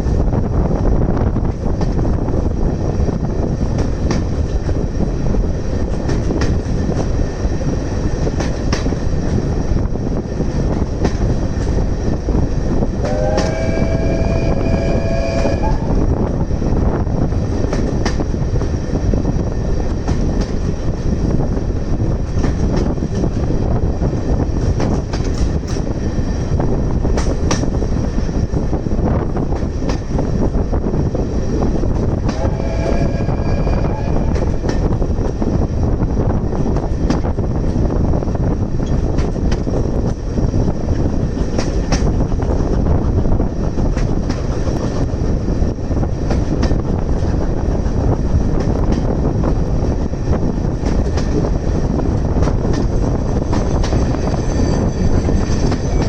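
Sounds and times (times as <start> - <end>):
train wheels rumbling on rail: 0.0 - 56.0
locomotive whistle: 13.0 - 16.1, 32.3 - 34.6.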